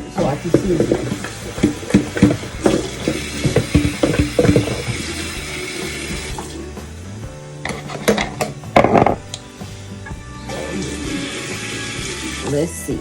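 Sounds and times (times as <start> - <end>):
quiet background music: 0.0 - 13.0
bowl and utensils clattering: 0.2 - 5.3, 7.6 - 9.5
tap running into sink: 0.2 - 6.6, 7.6 - 9.5.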